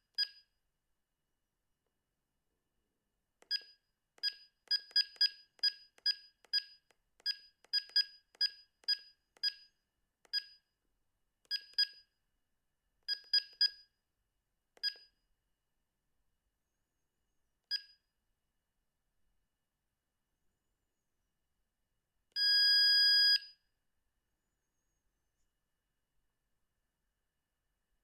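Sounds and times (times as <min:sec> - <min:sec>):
phone key beeps: 0:03.5 - 0:09.7, 0:11.5 - 0:12.0, 0:14.8 - 0:15.2.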